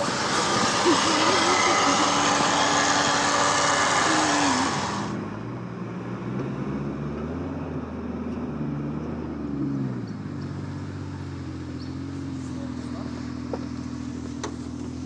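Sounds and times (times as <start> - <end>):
loud hissing rush: 0.0 - 5.2
truck engine revving: 0.0 - 15.0.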